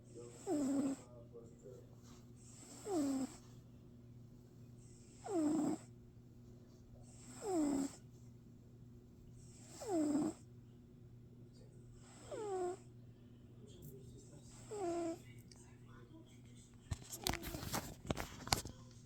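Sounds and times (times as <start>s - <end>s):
cat snoring with whistling tone: 0.3s - 1.1s, 2.5s - 3.4s, 5.1s - 5.9s, 7.1s - 8.0s, 9.5s - 10.4s, 12.0s - 12.8s, 14.5s - 15.2s.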